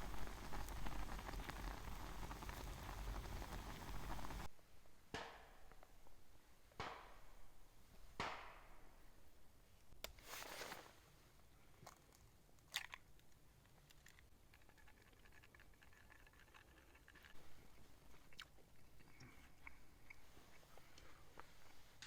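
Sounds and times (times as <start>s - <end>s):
person chewing food: 13.9s - 21.8s.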